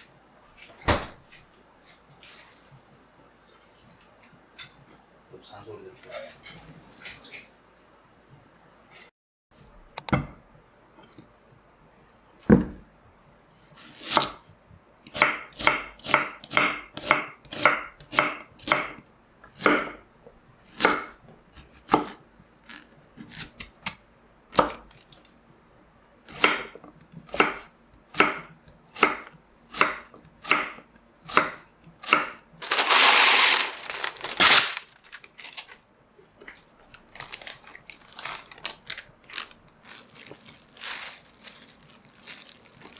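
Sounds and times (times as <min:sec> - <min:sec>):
knife chopping on cutting board: 0:15.1 - 0:20.0, 0:20.7 - 0:22.2, 0:26.3 - 0:32.4.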